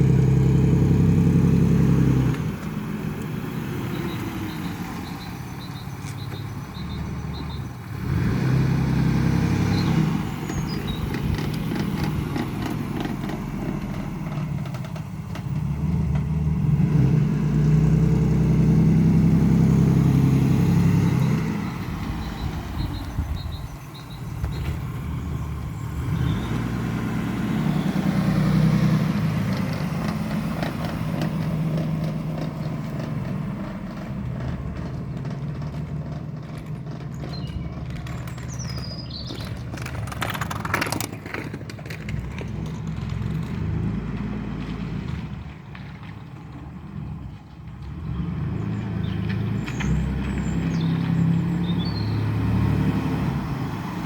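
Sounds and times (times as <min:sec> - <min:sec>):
car engine and road noise: 0:00.0 - 0:54.0
creaking from car rear: 0:02.2 - 0:07.8, 0:09.6 - 0:16.3, 0:21.0 - 0:27.0, 0:29.4 - 0:46.7.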